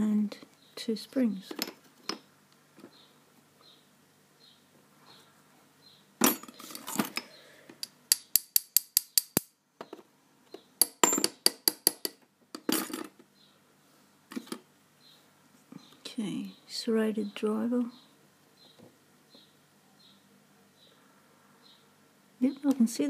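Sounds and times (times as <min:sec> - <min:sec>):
sharp metal taps: 0:07.8 - 0:09.5, 0:10.8 - 0:12.2.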